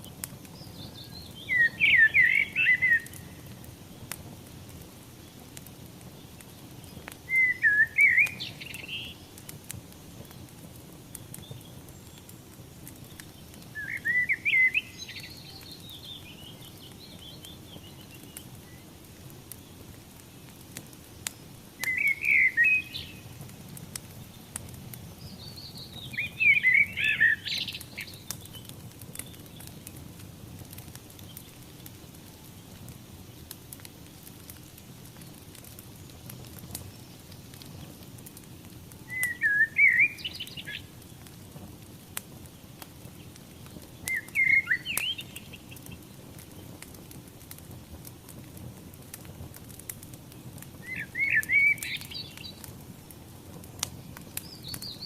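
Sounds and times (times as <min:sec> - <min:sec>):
fire hissing and crackling: 0:00.0 - 0:55.0
songbird warbling: 0:01.1 - 0:03.2, 0:07.3 - 0:09.2, 0:13.8 - 0:15.7, 0:21.8 - 0:23.2, 0:26.0 - 0:28.2, 0:39.1 - 0:40.9, 0:44.1 - 0:45.4, 0:50.8 - 0:52.4.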